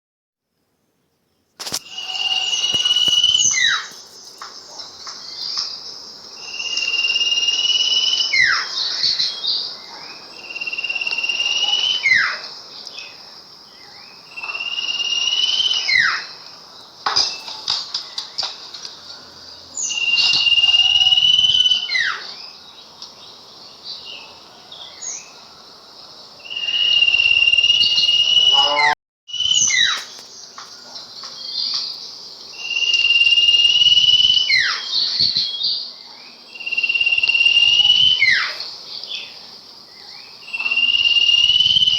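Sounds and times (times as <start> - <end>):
bird whistling song: 1.9 - 4.0, 26.5 - 30.0.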